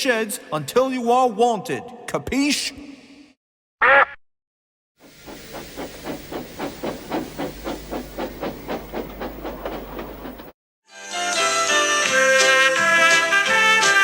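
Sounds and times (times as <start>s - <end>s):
steam hissing: 5.0s - 10.5s
steam locomotive chuffing: 5.0s - 10.6s.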